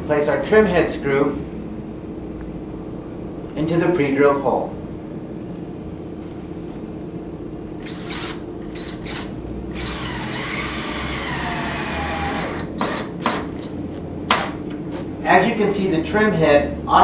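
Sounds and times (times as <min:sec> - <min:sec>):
drill motor whine: 0:07.8 - 0:14.6.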